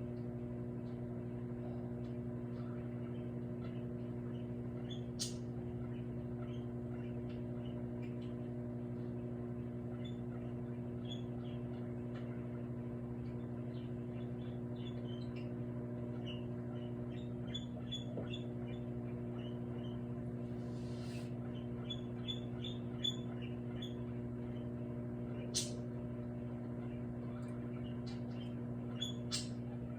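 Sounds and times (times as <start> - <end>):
microwave oven humming: 0.0 - 29.9
faint high squeaks and ticks: 9.9 - 12.4, 13.2 - 20.0, 21.1 - 25.8, 26.8 - 29.9.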